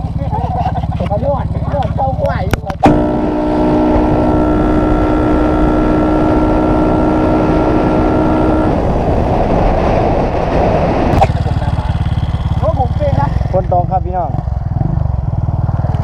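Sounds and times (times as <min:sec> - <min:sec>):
motorcycle engine: 0:00.0 - 0:16.0
wind and rain noise: 0:01.2 - 0:14.9
steady level tone: 0:02.8 - 0:09.0.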